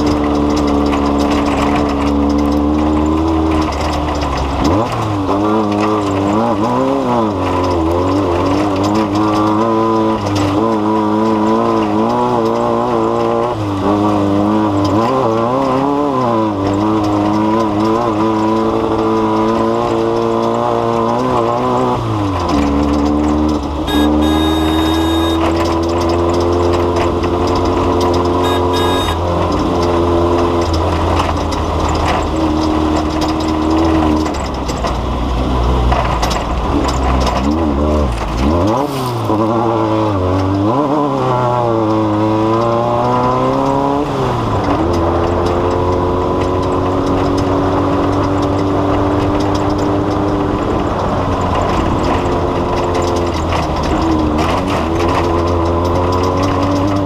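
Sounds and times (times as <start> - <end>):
vehicle engine running: 16.4 - 38.6.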